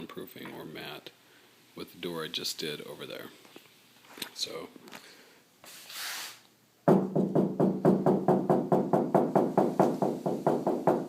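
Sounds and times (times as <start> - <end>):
rapid knocking on steel door: 6.9 - 11.0.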